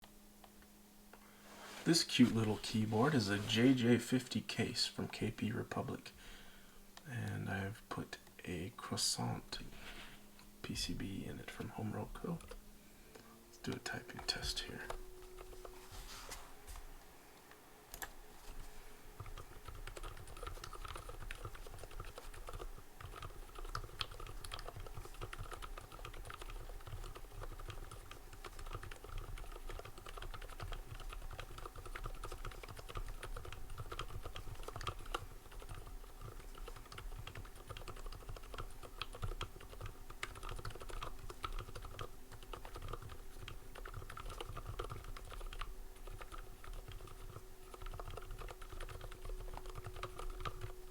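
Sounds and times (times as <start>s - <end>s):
soft muted keyboard typing: 10.7s - 15.8s, 17.9s - 50.9s.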